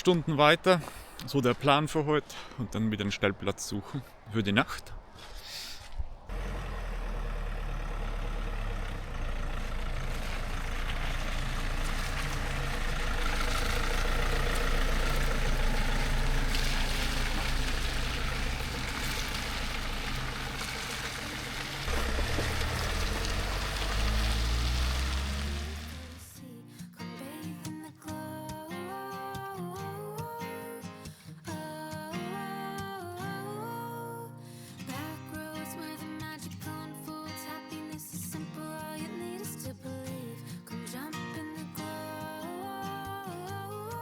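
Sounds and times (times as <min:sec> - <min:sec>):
road noise: 0:00.0 - 0:26.4
low engine hum: 0:06.3 - 0:26.4.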